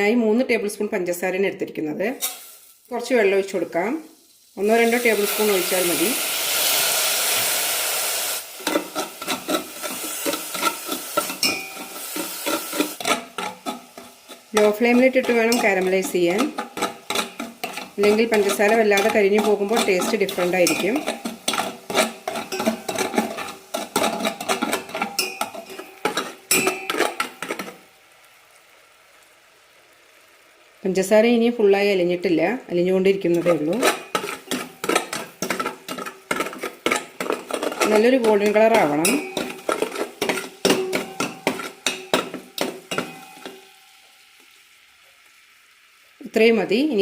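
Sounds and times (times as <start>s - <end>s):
faint hiss: 2.2s - 8.6s
spoon scraping and clinking pan: 8.6s - 27.9s, 33.3s - 43.9s.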